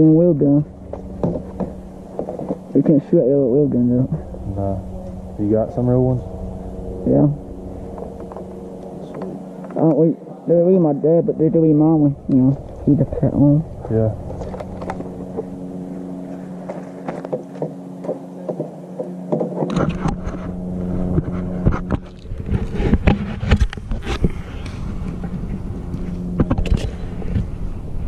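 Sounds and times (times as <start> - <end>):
low rumble: 0.0 - 18.0, 19.7 - 28.0
steady motor hum: 0.0 - 28.0
sharp clicks and knocks: 0.9 - 2.6, 16.7 - 20.5.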